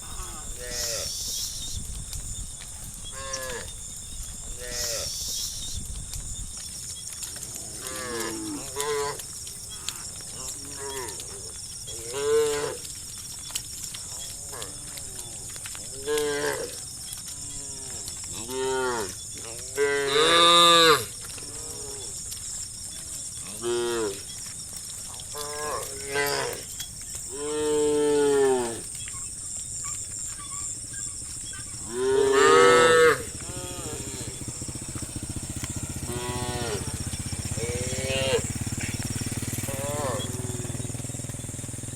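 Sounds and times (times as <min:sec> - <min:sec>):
cows mooing: 0:00.0 - 0:01.3, 0:03.1 - 0:05.3, 0:07.4 - 0:13.0, 0:14.1 - 0:22.4, 0:23.4 - 0:24.3, 0:25.1 - 0:29.0, 0:30.6 - 0:41.6.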